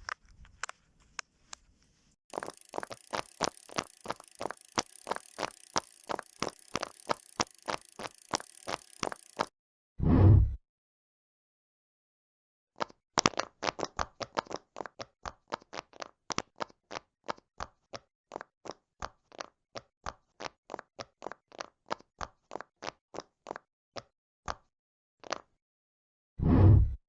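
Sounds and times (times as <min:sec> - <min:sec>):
fidget toy bubbles popping: 0:02.3 - 0:09.5.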